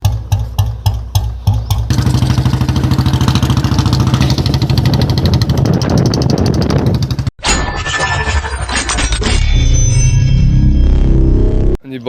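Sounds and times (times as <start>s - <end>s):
motorcycle engine revving: 0.0s - 7.3s.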